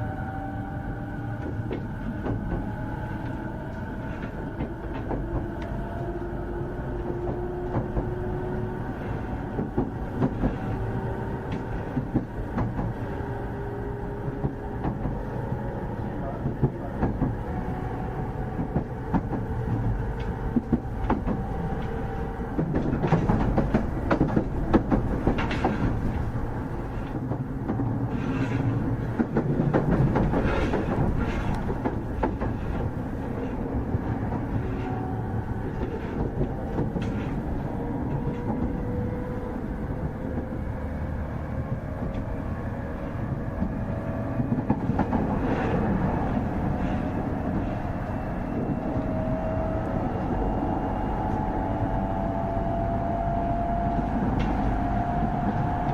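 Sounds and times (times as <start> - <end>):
wheels clacking over rail joints: 18.5 - 39.0.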